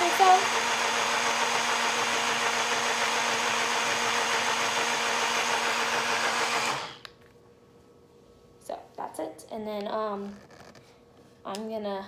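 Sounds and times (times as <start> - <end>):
portable blender running: 0.0 - 7.1.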